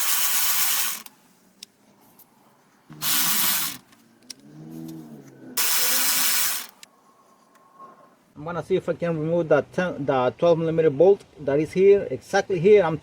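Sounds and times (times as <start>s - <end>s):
air ratchet hissing bursts: 0.0s - 1.1s, 3.0s - 3.9s, 5.6s - 6.9s.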